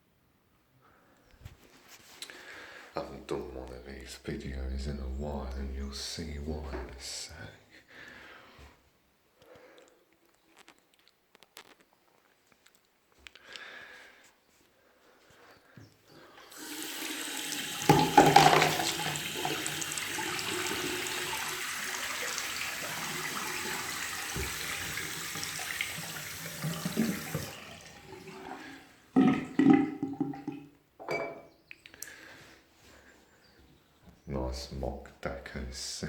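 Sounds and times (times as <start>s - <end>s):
toilet flushing: 16.4s - 30.7s.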